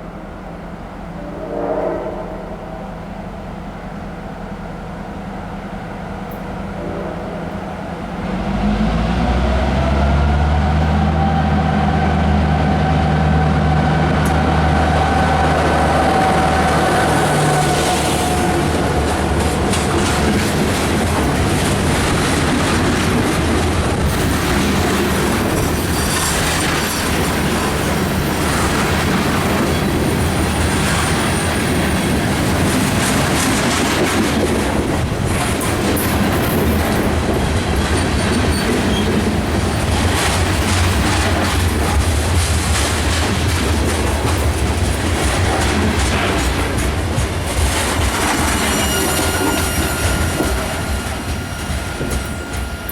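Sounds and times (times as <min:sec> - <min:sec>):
locomotive rumble: 0:00.0 - 0:52.9
high squeal: 0:01.1 - 0:03.4, 0:25.0 - 0:32.4, 0:48.3 - 0:52.9
wheels clicking over rail joints: 0:16.1 - 0:52.9.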